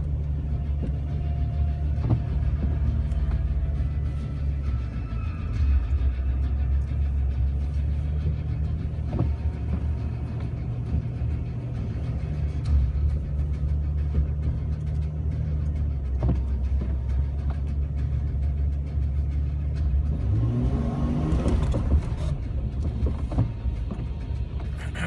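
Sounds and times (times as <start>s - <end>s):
car engine running: 0.0s - 25.0s.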